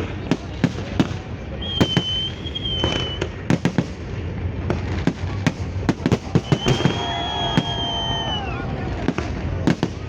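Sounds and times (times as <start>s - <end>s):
fireworks bursting with sharp bangs: 0.0s - 10.0s
low continuous rumble: 0.0s - 10.0s
high steady whistle: 1.6s - 3.3s, 6.4s - 8.6s.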